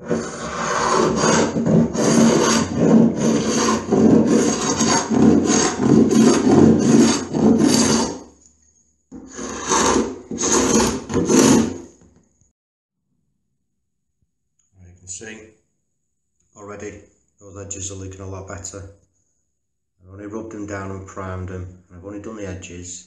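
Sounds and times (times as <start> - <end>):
hand sanding wood: 0.0 - 8.3, 9.3 - 11.9.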